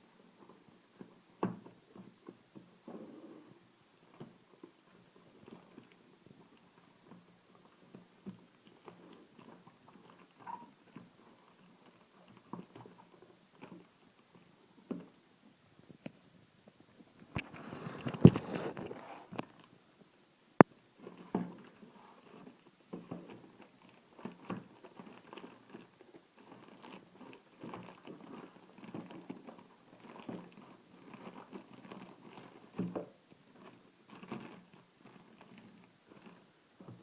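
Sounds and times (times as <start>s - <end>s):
cardboard packaging scraping: 17.4s - 19.7s.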